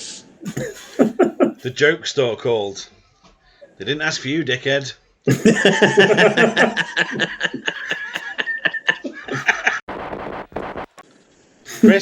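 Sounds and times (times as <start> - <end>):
men laughing: 0.4 - 1.8, 5.3 - 9.9.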